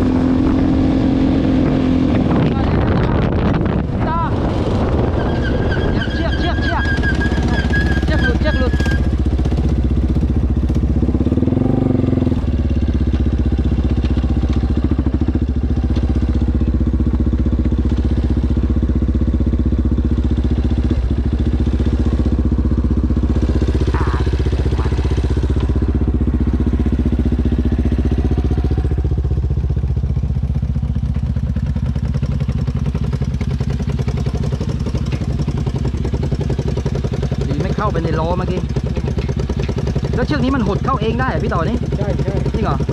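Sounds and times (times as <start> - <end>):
atv engine running: 0.0 - 42.9.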